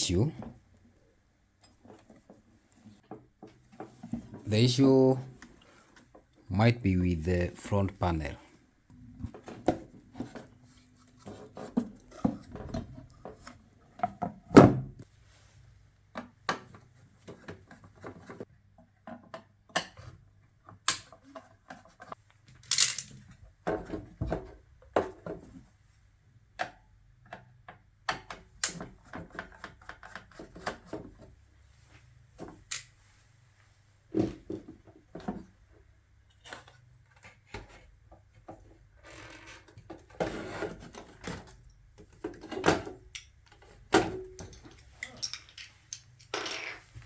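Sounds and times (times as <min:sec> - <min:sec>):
tools clicking and tapping: 0:43.1 - 0:46.4.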